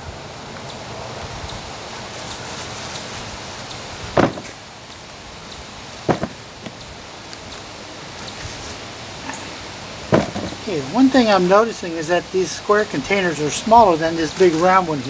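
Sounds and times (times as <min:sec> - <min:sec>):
outdoor noise: 0:00.0 - 0:15.0
faint scratching in soil: 0:01.9 - 0:03.6, 0:07.3 - 0:09.6
sharp thumps: 0:04.1 - 0:04.6, 0:06.0 - 0:06.8, 0:10.1 - 0:10.7.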